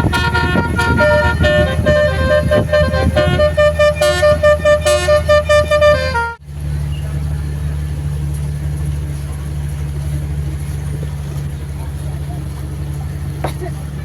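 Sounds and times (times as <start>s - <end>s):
musical horn tooting a tune: 0.0s - 6.4s
boat engine running: 0.0s - 14.0s.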